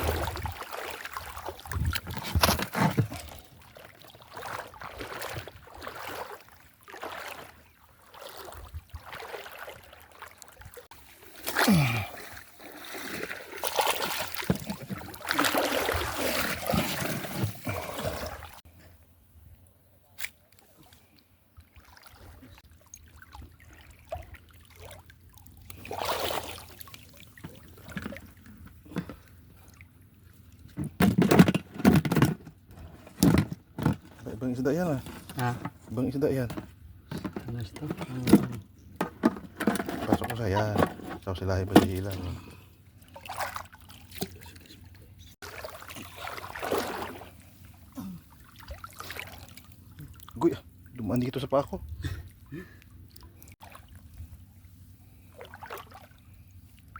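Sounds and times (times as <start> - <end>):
shallow water splashing: 0.0 - 18.6, 20.6 - 30.8, 40.2 - 56.9.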